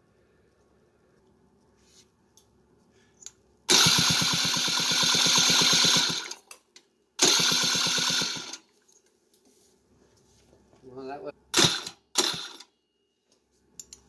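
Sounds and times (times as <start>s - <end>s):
electric starter cranking engine: 3.7s - 6.5s, 7.2s - 8.6s, 11.5s - 12.7s.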